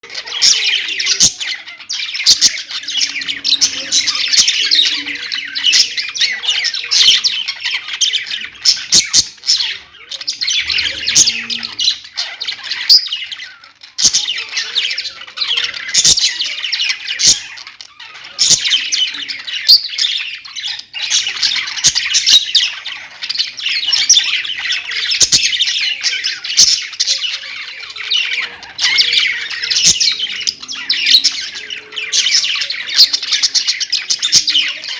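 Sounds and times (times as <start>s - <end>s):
parrots chirping and chattering: 0.0s - 34.9s.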